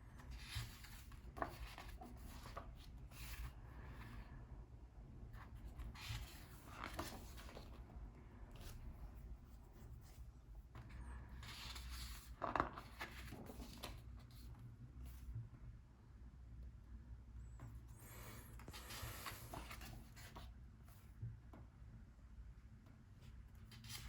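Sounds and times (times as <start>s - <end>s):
book pages rustling: 0.1s - 4.0s, 5.4s - 7.9s, 8.5s - 15.3s, 18.0s - 21.0s, 23.2s - 24.0s.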